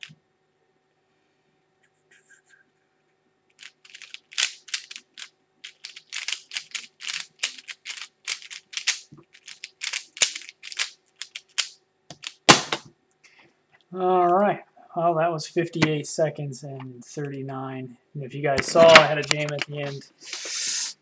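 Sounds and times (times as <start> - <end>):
puzzle cube layers clicking: 3.6 - 12.5.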